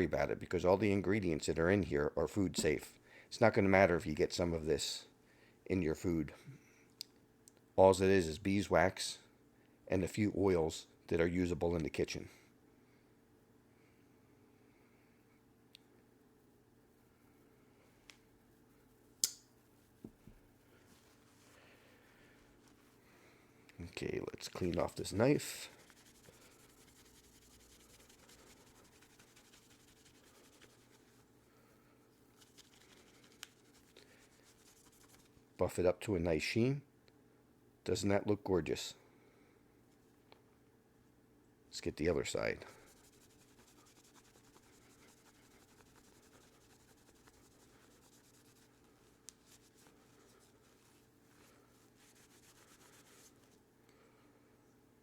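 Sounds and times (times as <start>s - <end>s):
low steady hum: 0.0s - 55.0s
cloth rubbing on knife: 18.3s - 23.0s, 24.0s - 31.4s, 32.2s - 35.4s, 42.4s - 53.7s
small sharp click: 19.2s - 19.5s
cloth rubbing knife handle: 42.8s - 53.6s.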